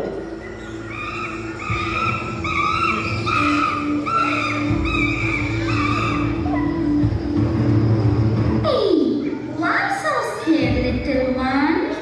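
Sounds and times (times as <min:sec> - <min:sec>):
monkey chattering calls: 0:00.0 - 0:07.0.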